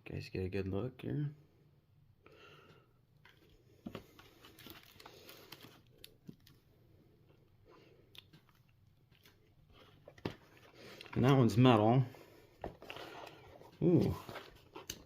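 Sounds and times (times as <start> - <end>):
cardboard and plastic packaging handled: 3.2 - 6.7, 8.4 - 11.8, 12.5 - 15.0.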